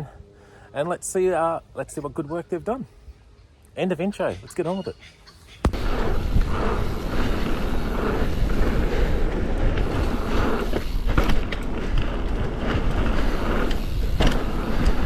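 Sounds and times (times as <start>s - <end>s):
wind buffeting microphone: 5.6s - 15.0s
tyres rolling on dirt: 5.7s - 15.0s.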